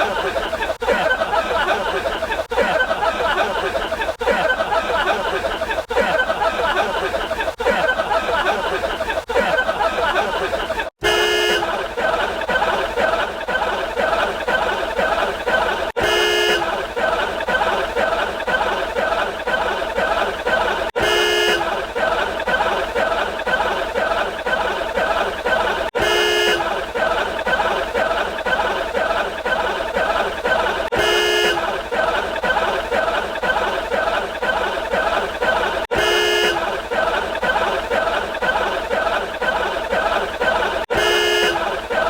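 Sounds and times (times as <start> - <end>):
rapid speech: 0.0 - 10.9, 11.5 - 42.0
horn-like honk sound effect: 11.0 - 11.8, 16.0 - 16.7, 21.0 - 21.7, 26.0 - 26.7, 30.9 - 31.7, 35.9 - 36.7, 40.9 - 41.7.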